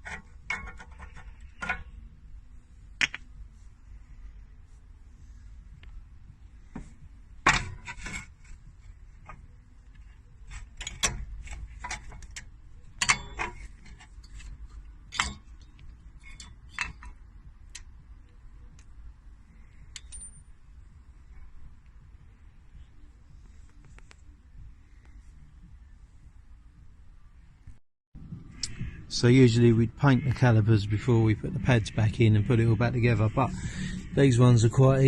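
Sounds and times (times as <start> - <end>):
metal tools clinking: 13.0 - 14.5, 16.2 - 17.2.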